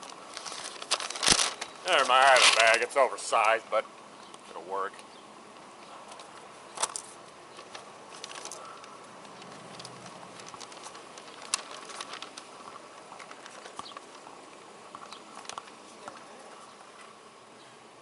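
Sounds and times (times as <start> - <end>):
plastic bag rustling: 0.0 - 3.6, 6.0 - 17.1
things being handled: 0.0 - 3.6, 6.0 - 16.3.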